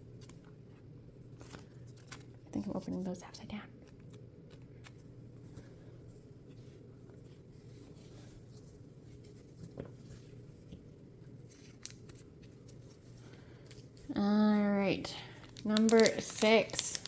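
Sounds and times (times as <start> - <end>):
low steady hum: 0.0 - 17.0
cards and foil handling: 1.3 - 2.6, 11.4 - 17.0.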